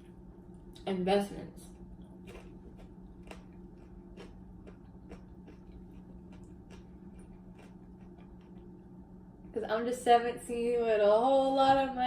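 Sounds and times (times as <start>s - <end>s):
steady low hum: 0.0s - 12.0s
chewing and mouth sounds: 1.7s - 8.9s.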